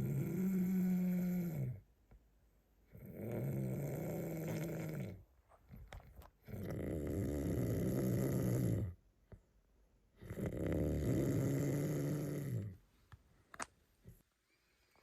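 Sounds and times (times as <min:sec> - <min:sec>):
man snoring: 0:00.0 - 0:01.8, 0:03.0 - 0:05.2, 0:06.7 - 0:08.9, 0:10.2 - 0:12.7.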